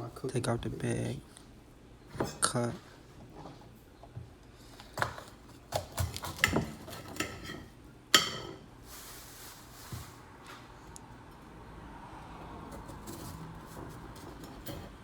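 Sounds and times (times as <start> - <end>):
utensils and dishes clinking: 6.0 - 8.7.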